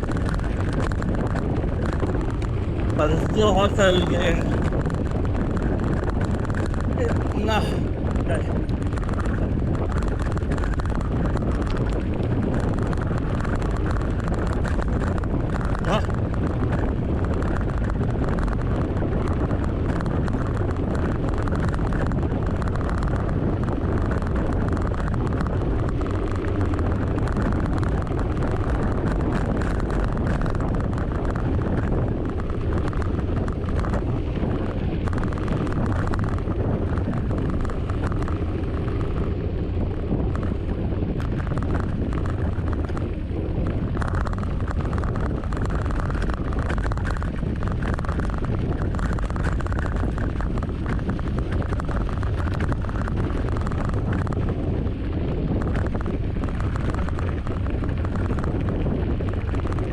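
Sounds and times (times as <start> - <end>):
wind buffeting microphone: 0.0 - 59.9.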